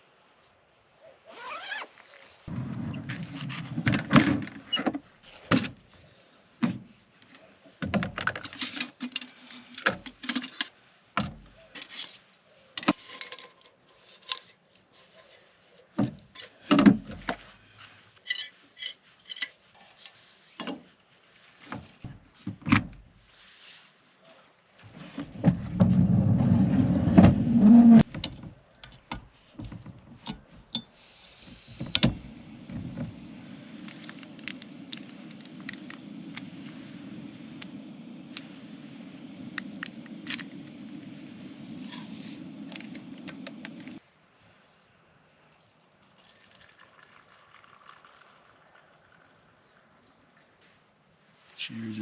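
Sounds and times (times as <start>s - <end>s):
low rumbling handling noise: 31.3s - 44.0s.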